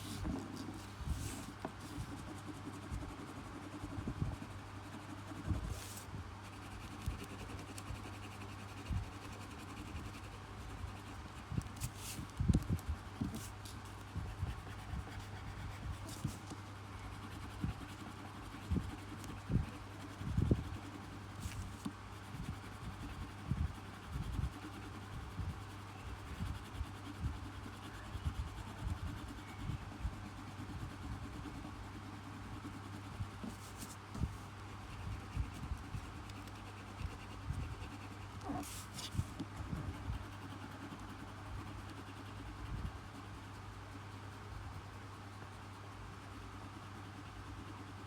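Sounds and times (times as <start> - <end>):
paintbrush scratching on surface: 0.0 - 10.3, 11.8 - 13.8, 33.4 - 34.5, 35.1 - 39.4
steady low hum: 0.0 - 48.0.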